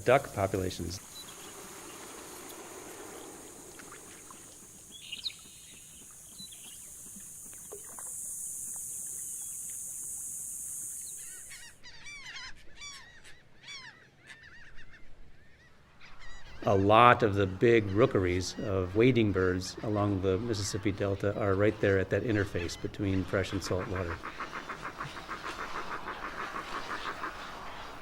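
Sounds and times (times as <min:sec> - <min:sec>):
high buzz of insects: 0:00.0 - 0:11.8, 0:17.6 - 0:28.0
geese honking: 0:16.5 - 0:28.0.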